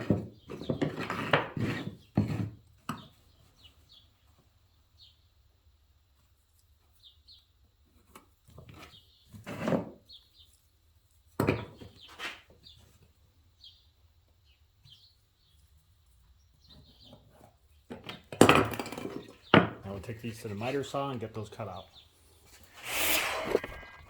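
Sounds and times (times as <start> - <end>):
wood knocks and scrapes: 0.0 - 3.0, 22.7 - 24.0
bird chirping: 3.0 - 5.4, 10.0 - 10.6, 13.6 - 18.3.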